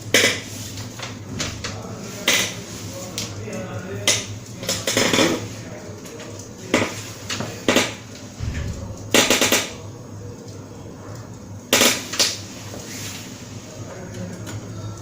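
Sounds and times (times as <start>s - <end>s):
steady low hum: 7.9s - 15.0s.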